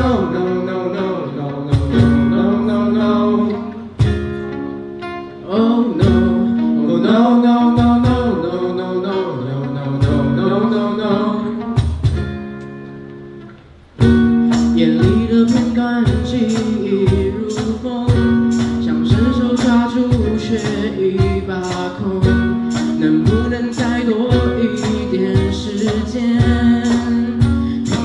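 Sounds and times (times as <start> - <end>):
guitar-led instrumental music: 0.0 - 28.0.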